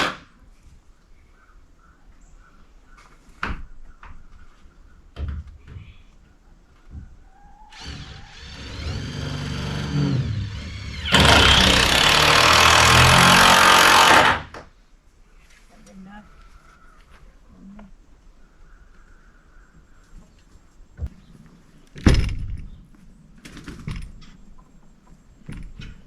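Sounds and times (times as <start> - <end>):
circular saw cutting wood: 7.8 - 14.5.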